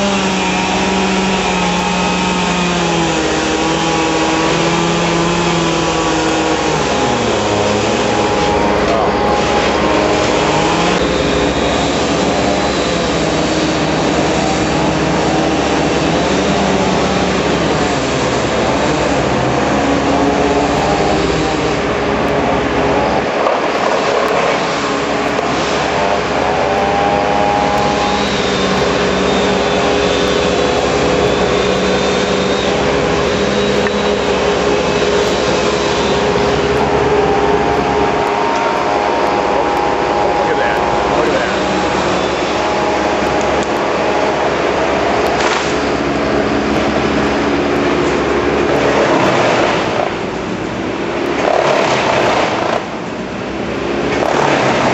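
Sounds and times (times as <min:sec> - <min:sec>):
machinery engine drone: 0:00.0 - 0:54.9.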